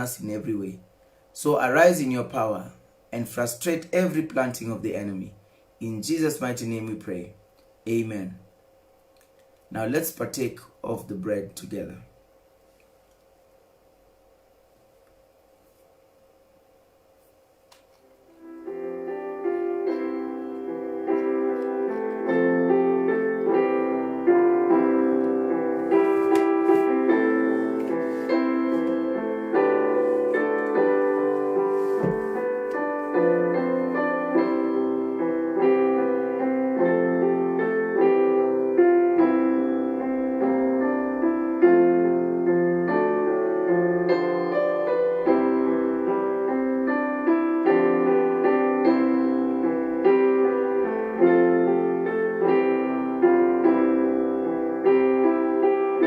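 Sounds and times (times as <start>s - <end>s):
soft piano music: 17.9s - 56.0s.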